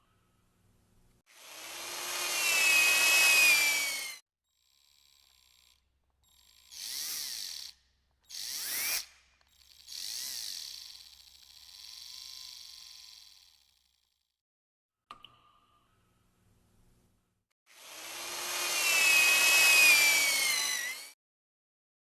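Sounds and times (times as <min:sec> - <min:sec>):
cord reel whirring and ratcheting: 0:01.7 - 0:04.2, 0:04.9 - 0:14.2, 0:18.0 - 0:21.2.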